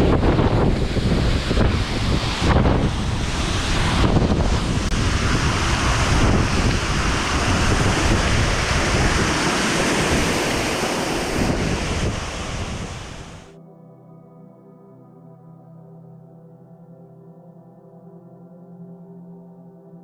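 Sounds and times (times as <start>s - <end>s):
waterfall roaring: 0.0s - 13.5s
wind buffeting microphone: 0.0s - 13.5s.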